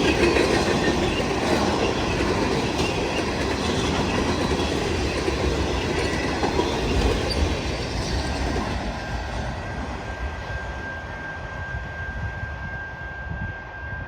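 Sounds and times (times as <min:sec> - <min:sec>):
wheels clickety-clack over rail joints: 0:00.0 - 0:10.5
freight train rolling past: 0:00.0 - 0:14.0.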